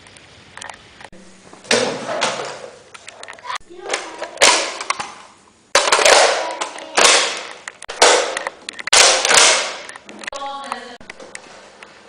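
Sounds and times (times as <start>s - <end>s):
sharp gunfire-like bangs: 5.8s - 9.9s.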